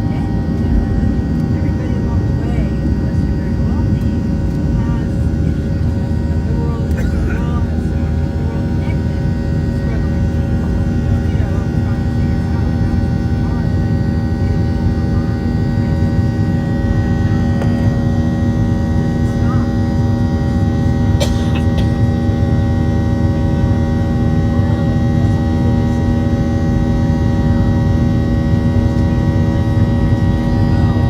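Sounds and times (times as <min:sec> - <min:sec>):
jet engine drone in cabin: 0:00.0 - 0:31.0.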